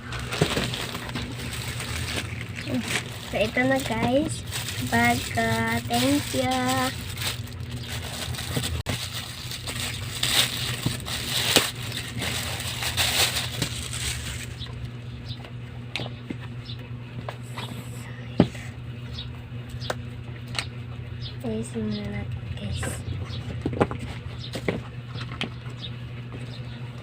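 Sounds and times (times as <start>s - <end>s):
plastic packaging rustling: 0.0s - 14.8s.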